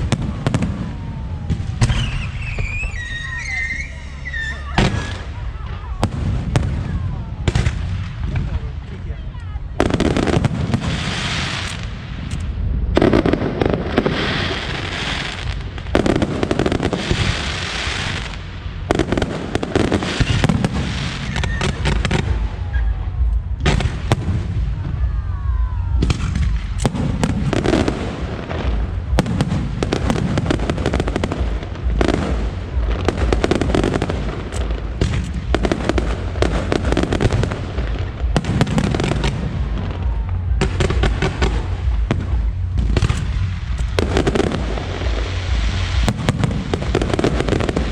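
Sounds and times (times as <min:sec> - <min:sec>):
whistling fireworks: 0:00.0 - 0:08.7, 0:09.8 - 0:47.9
fireworks bursts and crackling: 0:00.0 - 0:47.9.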